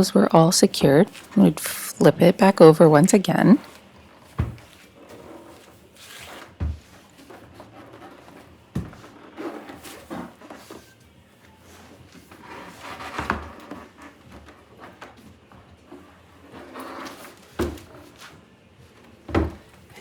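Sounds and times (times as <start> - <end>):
knocks on wooden cabinet: 4.4 - 4.7, 19.3 - 19.7.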